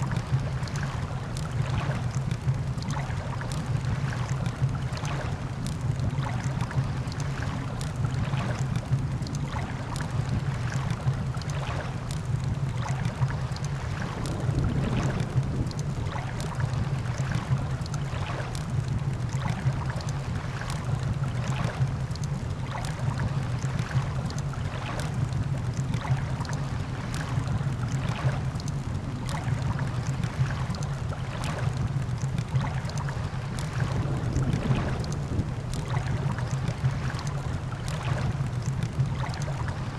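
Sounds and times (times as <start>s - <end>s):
low rumble of surf: 0.0s - 39.9s
campfire crackling and popping: 12.1s - 16.8s, 32.0s - 37.8s.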